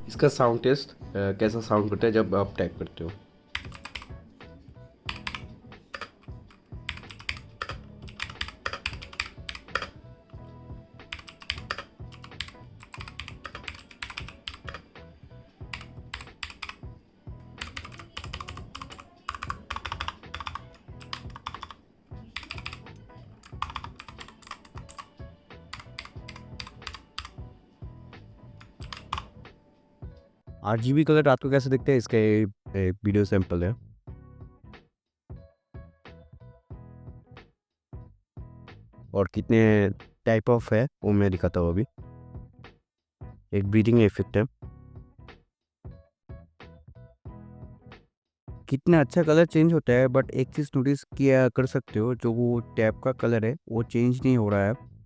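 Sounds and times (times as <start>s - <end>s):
mechanical keyboard typing clicks: 3.6s - 4.1s, 5.1s - 10.0s, 11.1s - 14.8s, 15.7s - 16.8s, 17.6s - 21.8s, 22.4s - 25.1s, 25.7s - 27.4s, 28.6s - 29.4s.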